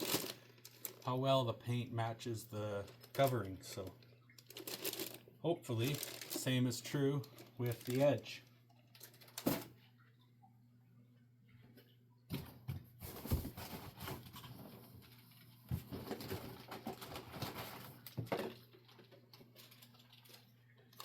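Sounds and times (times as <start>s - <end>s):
packaging rustling and crinkling: 0.0s - 1.1s, 2.8s - 8.3s.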